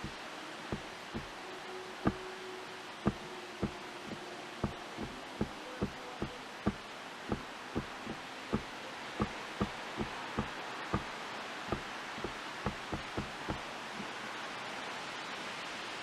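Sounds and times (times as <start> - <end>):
soft low thumps: 0.0 - 1.3, 3.1 - 11.1, 11.7 - 13.6
wind through leafy trees: 0.0 - 16.0.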